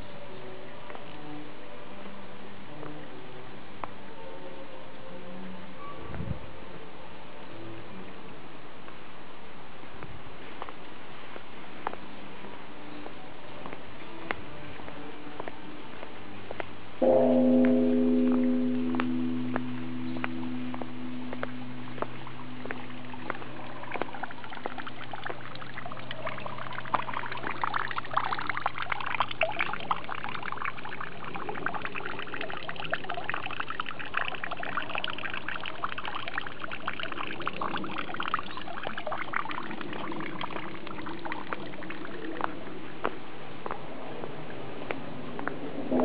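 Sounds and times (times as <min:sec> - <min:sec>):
temple bell hum: 0:17.0 - 0:27.9
water pouring and trickling: 0:20.0 - 0:44.6.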